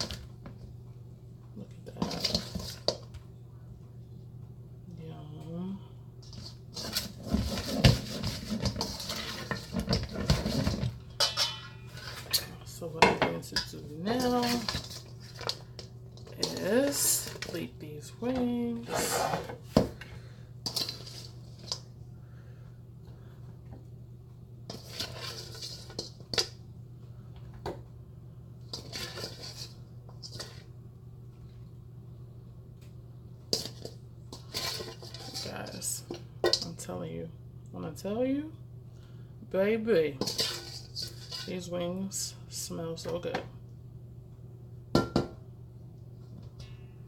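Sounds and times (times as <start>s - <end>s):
utensils clinking: 6.3s - 15.6s
utensils scraping a plate: 18.8s - 19.6s, 33.6s - 36.7s, 40.2s - 41.7s.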